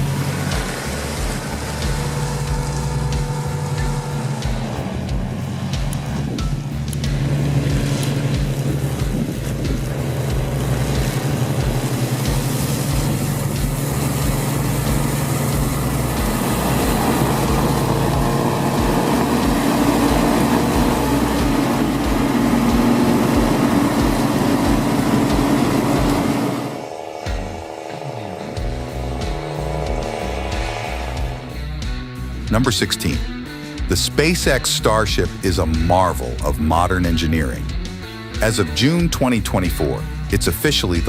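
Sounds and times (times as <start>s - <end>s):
tractor mower blades cutting: 0.0s - 31.4s
tractor engine running: 0.0s - 33.6s.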